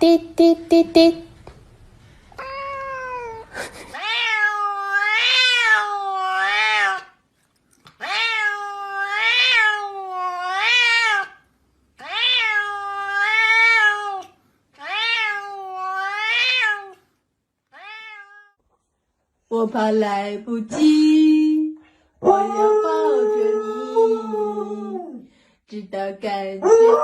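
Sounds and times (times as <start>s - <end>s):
cat meowing: 2.4s - 7.2s, 8.0s - 11.4s, 12.0s - 17.0s, 17.7s - 18.6s.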